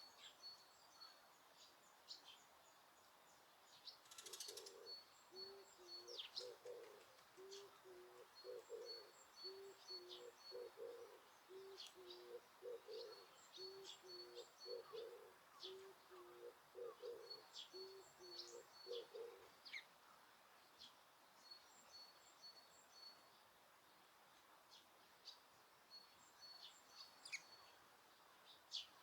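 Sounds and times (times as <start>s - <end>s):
songbirds chirping: 0.0s - 29.0s
dove cooing: 4.2s - 19.6s.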